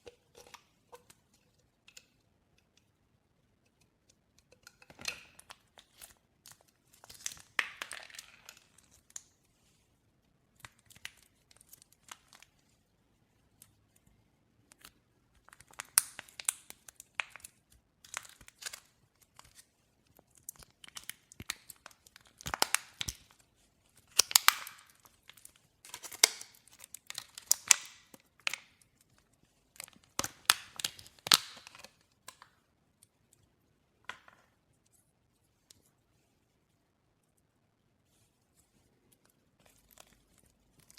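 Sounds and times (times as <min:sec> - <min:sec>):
slime squishing and popping: 0:14.7 - 0:19.6, 0:20.3 - 0:23.3, 0:24.0 - 0:28.9, 0:29.8 - 0:32.5.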